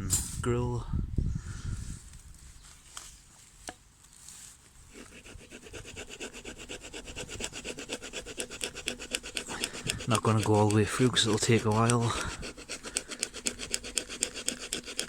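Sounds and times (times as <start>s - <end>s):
saw cutting dry wood: 4.9s - 15.0s.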